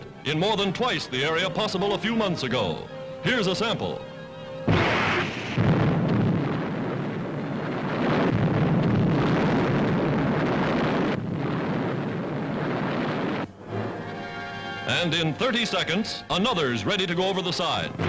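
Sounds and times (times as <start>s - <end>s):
depth charge explosion: 4.7s - 13.4s.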